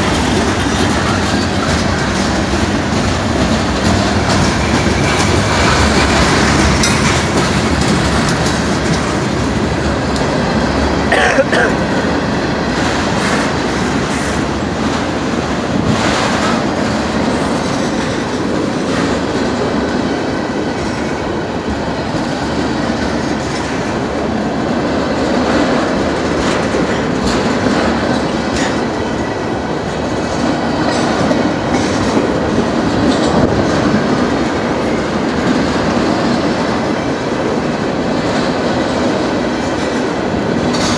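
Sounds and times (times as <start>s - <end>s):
train wheels rumbling on rails: 0.0s - 40.9s.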